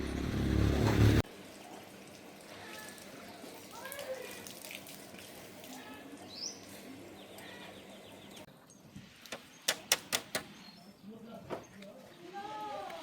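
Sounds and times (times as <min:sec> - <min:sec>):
sharp clicks or knocks: 0:09.3 - 0:10.6.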